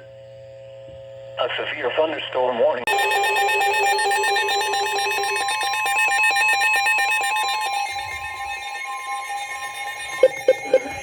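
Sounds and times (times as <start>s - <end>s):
steady electronic tone: 2.9s - 11.0s
weather radio warbling alarm beep: 2.9s - 11.0s.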